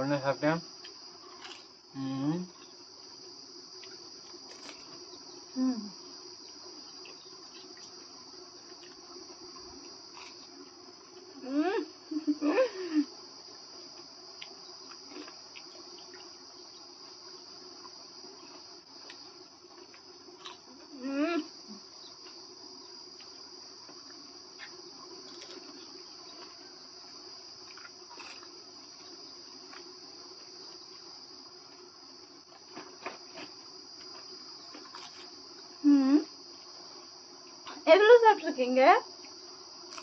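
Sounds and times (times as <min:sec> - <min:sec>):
insect chirring: 0:00.0 - 0:40.0
person humming: 0:02.0 - 0:02.5, 0:05.6 - 0:06.0, 0:11.4 - 0:13.1, 0:20.9 - 0:21.8, 0:35.8 - 0:36.3.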